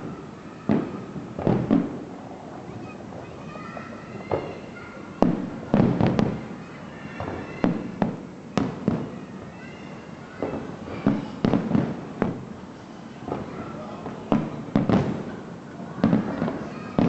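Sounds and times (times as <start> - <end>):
firework shells bursting: 7.2 - 9.1.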